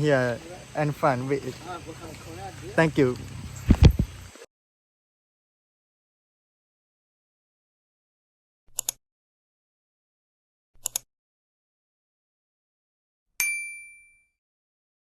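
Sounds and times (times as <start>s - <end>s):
quick double clicks: 10.8s - 11.0s
bright metallic ding: 13.4s - 14.3s.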